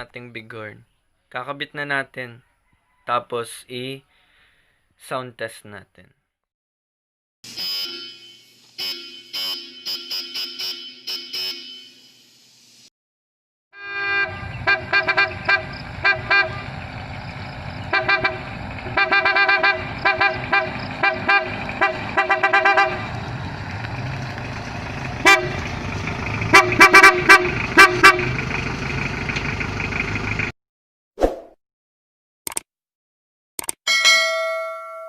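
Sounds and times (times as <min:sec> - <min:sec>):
car horns honking: 0:07.5 - 0:12.1, 0:13.8 - 0:23.3, 0:25.1 - 0:28.5
vehicle engine running: 0:14.0 - 0:30.5.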